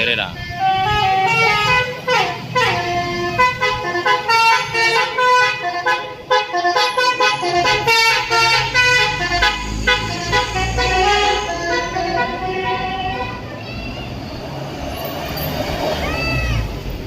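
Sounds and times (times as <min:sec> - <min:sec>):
bus engine rumble: 0:00.0 - 0:17.0
musical bus air horn: 0:00.3 - 0:13.6.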